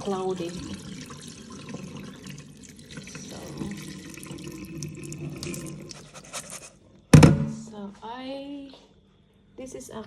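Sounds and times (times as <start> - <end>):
water running from a tap: 0.0 - 6.5.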